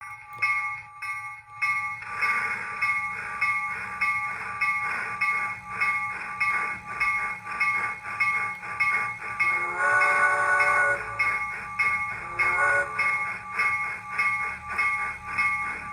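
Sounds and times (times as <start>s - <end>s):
steam exhaust chuffs: 1.9s - 15.9s
steam whistle: 9.4s - 13.7s.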